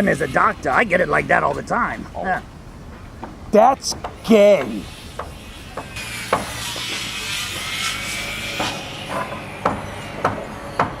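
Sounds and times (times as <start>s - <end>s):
hammer knocks: 2.9s - 7.0s, 8.6s - 11.0s
scraping noise: 4.3s - 10.2s.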